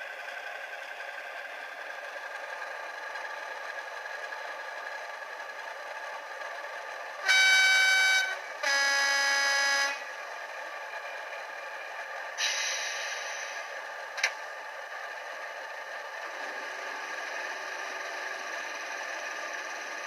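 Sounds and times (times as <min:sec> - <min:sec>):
diesel engine idling through speaker: 0:00.0 - 0:20.0
two-tone train horn: 0:07.2 - 0:10.2
sudden hiss: 0:12.4 - 0:13.8.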